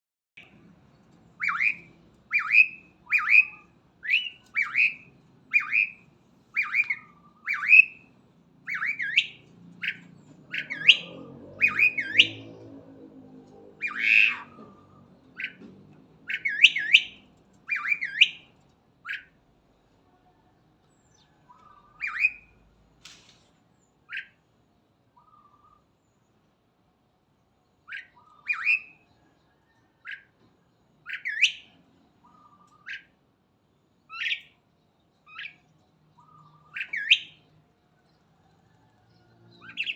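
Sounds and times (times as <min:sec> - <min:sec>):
starling squawking calls: 0:01.4 - 0:06.0, 0:06.6 - 0:08.0, 0:08.7 - 0:12.4, 0:13.8 - 0:14.8, 0:16.3 - 0:18.4.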